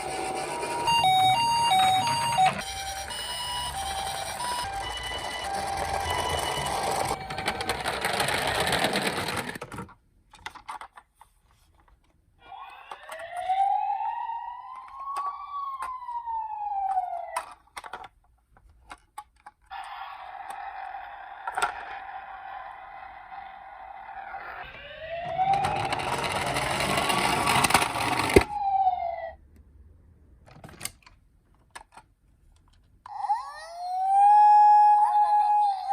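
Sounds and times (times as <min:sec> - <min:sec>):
steady siren tone: 0:00.0 - 0:07.6, 0:12.5 - 0:17.4, 0:19.8 - 0:27.5, 0:28.4 - 0:29.4
toy electronic siren wail: 0:00.0 - 0:08.1, 0:12.4 - 0:17.5, 0:19.7 - 0:29.4, 0:33.1 - 0:35.9.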